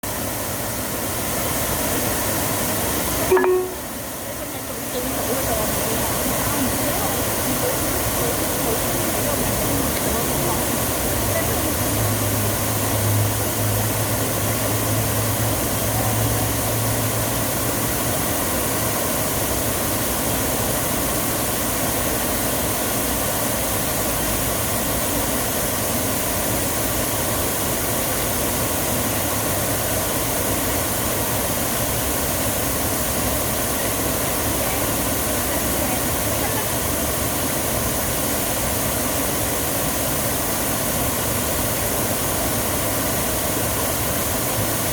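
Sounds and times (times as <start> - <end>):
water rushing down waterfall: 0.0 - 44.9.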